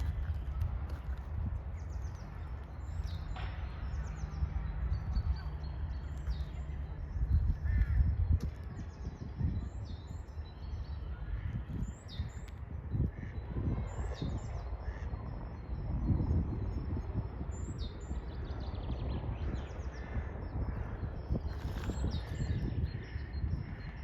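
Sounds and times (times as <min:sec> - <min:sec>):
steady low rumble: 0:00.0 - 0:24.0.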